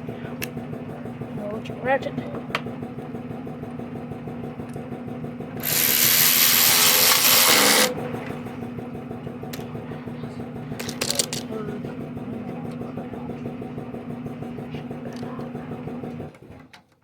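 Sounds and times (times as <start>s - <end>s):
power tool running: 5.5s - 9.6s.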